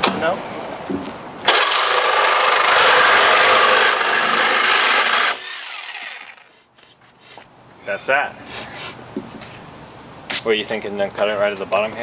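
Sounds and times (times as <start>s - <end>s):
power tool cutting metal: 1.5s - 6.5s.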